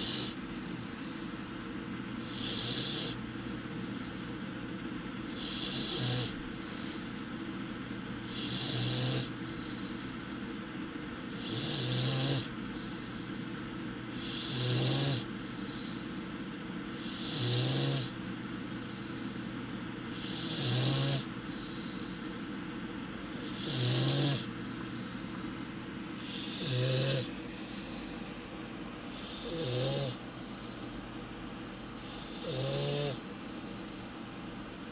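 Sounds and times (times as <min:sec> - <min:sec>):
puppy snoring: 0:00.0 - 0:01.2, 0:02.2 - 0:04.1, 0:05.3 - 0:07.0, 0:08.2 - 0:09.9, 0:11.3 - 0:13.3, 0:14.1 - 0:16.0, 0:17.0 - 0:18.2, 0:20.1 - 0:22.2, 0:23.3 - 0:25.3, 0:26.2 - 0:28.2, 0:29.1 - 0:30.8, 0:32.0 - 0:33.3.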